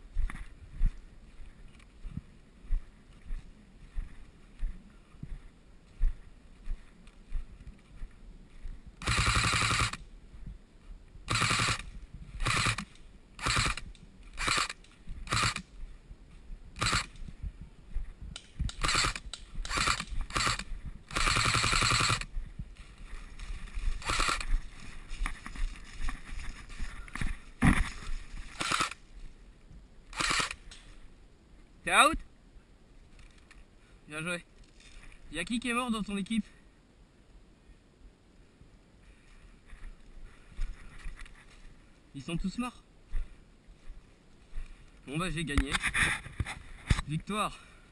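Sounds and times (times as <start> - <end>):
airsoft gun firing full-auto bursts: 9.0 - 10.0, 11.3 - 15.6, 16.8 - 17.2, 18.7 - 22.3, 24.0 - 24.5, 28.5 - 29.0, 30.1 - 30.6.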